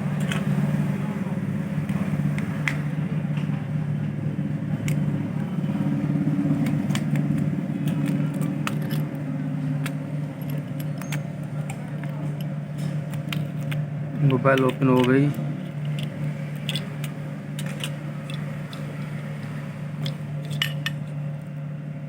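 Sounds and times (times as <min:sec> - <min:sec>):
steady low hum: 0:00.0 - 0:22.0
tools clicking prying phone casing: 0:04.8 - 0:05.1, 0:06.2 - 0:21.2.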